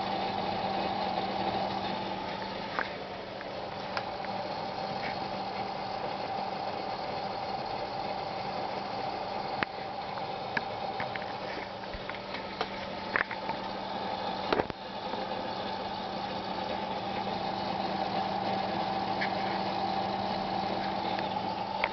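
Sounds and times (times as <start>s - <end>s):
hard drive hum and whine: 0.0s - 21.9s
hard drive clicks: 9.5s - 13.8s, 14.4s - 15.2s, 20.6s - 21.9s.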